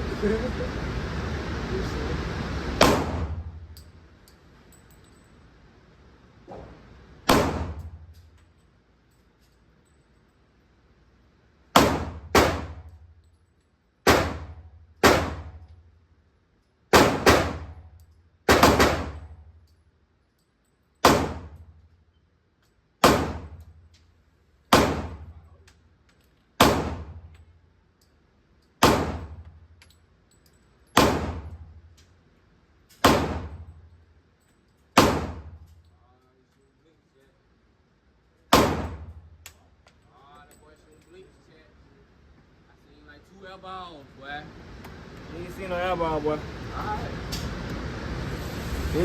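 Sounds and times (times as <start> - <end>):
gunshots with echo: 2.8 - 3.4.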